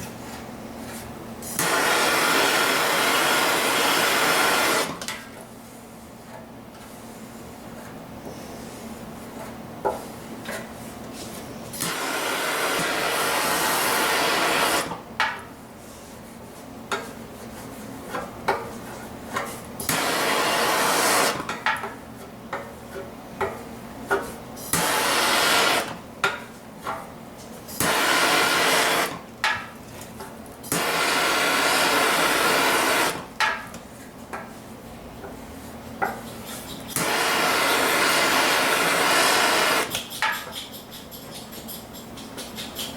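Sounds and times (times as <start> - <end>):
gas torch hissing: 1.6 - 5.0, 11.8 - 15.0, 19.9 - 21.4, 24.7 - 26.0, 27.8 - 29.2, 30.7 - 33.2, 36.9 - 40.0
taps and scrapes on lead: 39.9 - 42.9.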